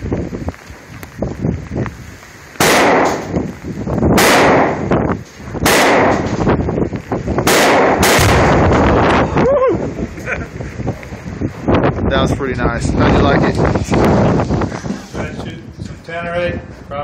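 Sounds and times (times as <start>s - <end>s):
gunshots with echoing tail: 2.6s - 3.4s, 4.1s - 5.0s, 5.6s - 6.5s, 7.4s - 8.9s.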